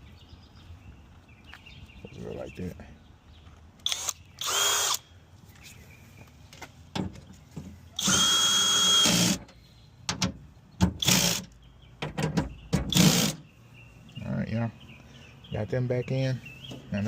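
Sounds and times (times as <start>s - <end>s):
cordless drill whining: 3.8s - 5.0s, 8.0s - 9.4s.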